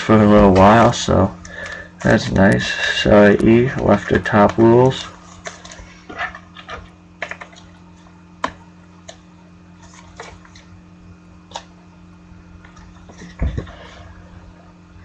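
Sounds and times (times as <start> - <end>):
cards clicking and tapping: 1.4 - 7.7.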